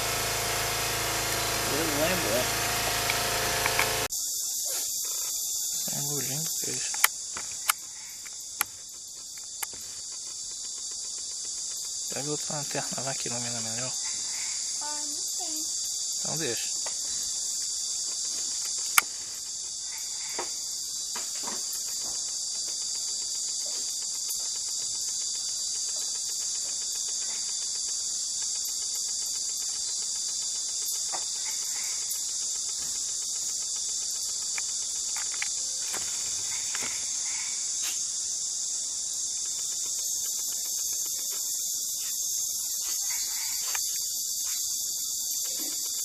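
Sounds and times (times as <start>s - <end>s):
crickets and katydids trilling: 0.0s - 46.0s.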